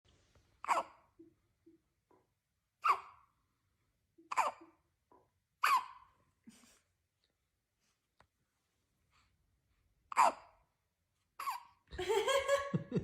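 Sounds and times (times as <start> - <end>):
baby hiccuping: 0.6 - 1.1, 2.8 - 3.3, 4.2 - 4.9, 5.6 - 6.1, 10.1 - 10.6, 11.4 - 11.8.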